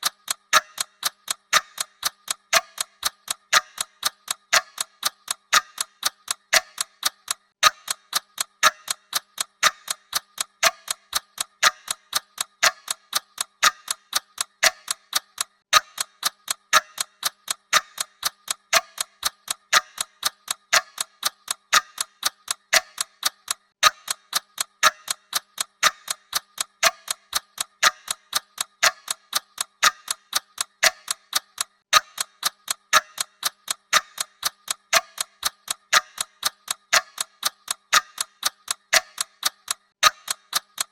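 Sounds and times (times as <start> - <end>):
clock ticking: 0.0 - 40.9.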